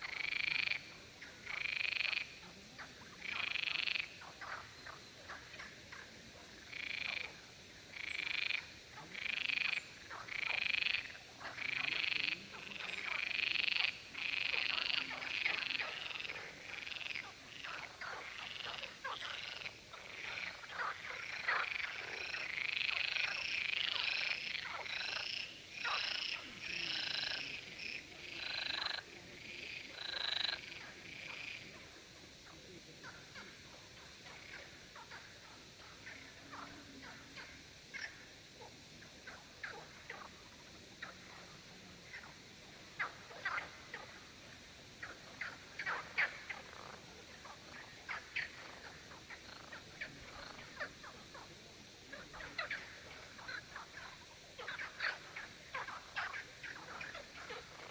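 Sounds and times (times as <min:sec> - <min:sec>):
frogs croaking: 0:00.0 - 0:57.9.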